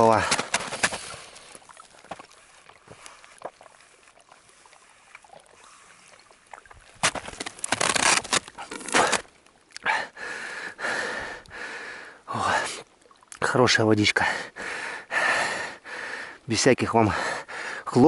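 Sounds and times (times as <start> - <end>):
water slurped through straw: 0.0 - 9.3.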